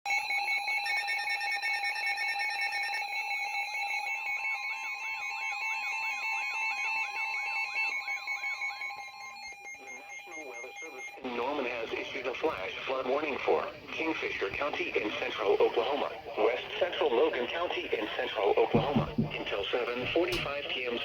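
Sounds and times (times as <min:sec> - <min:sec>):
steady alarm tones: 0:13.2 - 0:20.6.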